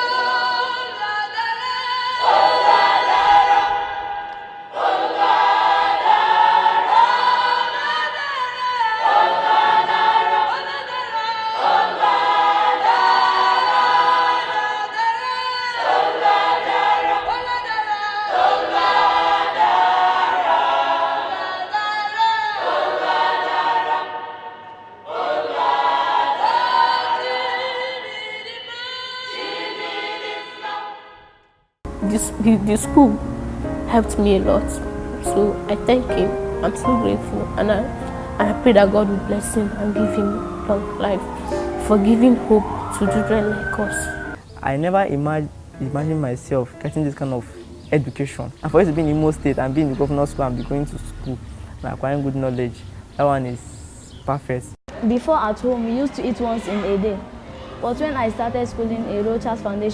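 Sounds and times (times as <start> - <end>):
choir singing: 0.0 - 31.4, 32.0 - 44.4, 56.2 - 59.3
singers breathing: 41.3 - 41.8, 51.4 - 51.8.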